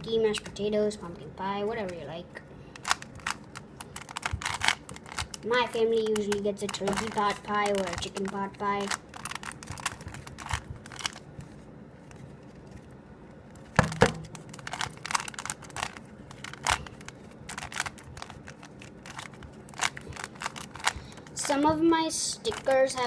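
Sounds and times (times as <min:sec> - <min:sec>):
puzzle cube layers clicking: 0:02.8 - 0:11.2
cube knocking on surface: 0:13.8 - 0:14.3.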